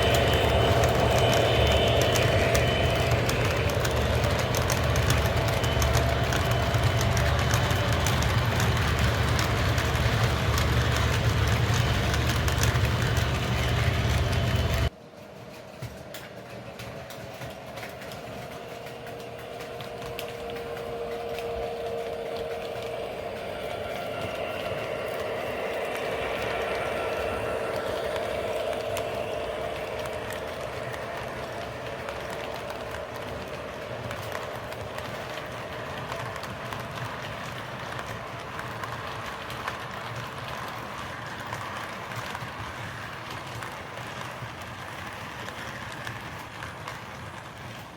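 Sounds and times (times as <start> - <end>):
steady hum with held tones: 0.0 - 14.9, 17.7 - 39.0
model locomotive diesel engine sound: 0.0 - 47.9
wheel and track noise: 0.0 - 47.9.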